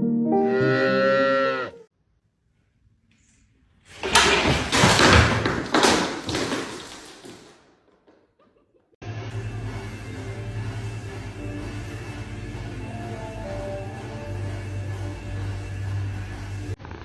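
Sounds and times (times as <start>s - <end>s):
piano music: 0.0s - 1.8s, 9.4s - 16.6s
loud noisy clatter with thumps: 4.0s - 7.6s.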